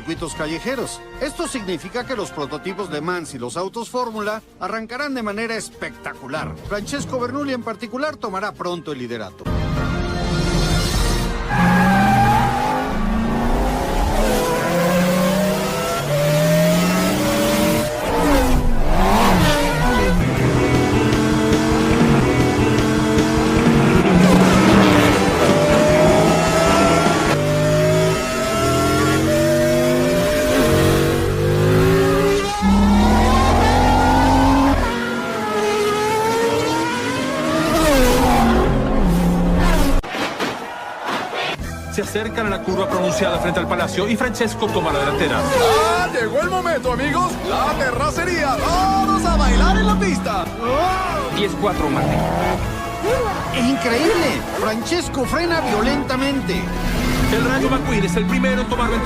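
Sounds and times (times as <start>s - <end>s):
cars passing by: 11.4s - 40.0s, 42.6s - 53.8s
race car engines accelerating: 11.4s - 40.0s, 42.4s - 59.0s.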